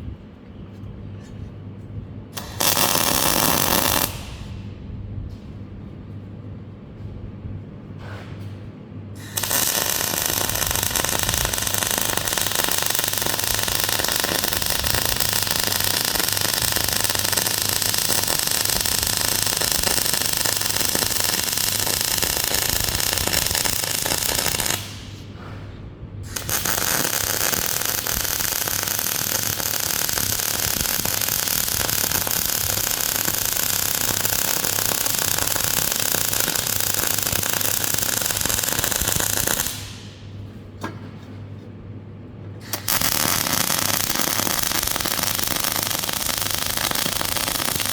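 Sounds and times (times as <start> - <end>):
electric arc welding crackle: 2.4 - 4.5, 9.2 - 25.2, 26.3 - 40.3, 42.6 - 47.9.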